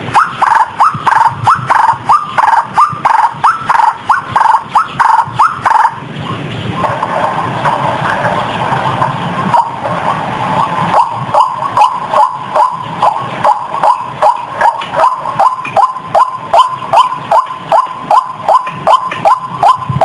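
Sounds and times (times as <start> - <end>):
waterhen calls: 0.0 - 9.9, 10.6 - 20.0
rough bird chattering: 10.9 - 19.8.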